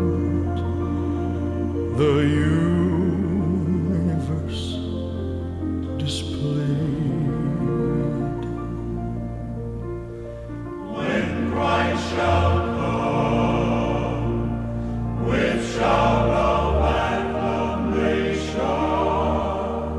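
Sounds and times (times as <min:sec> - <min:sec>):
choir singing over held chords: 0:00.0 - 0:04.8, 0:10.5 - 0:19.9.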